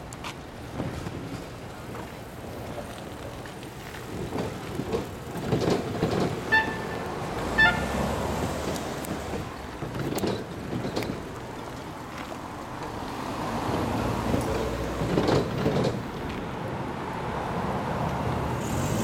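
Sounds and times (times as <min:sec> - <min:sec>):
passing vehicles: 0:00.0 - 0:19.0
short high horn toots: 0:06.5 - 0:07.0.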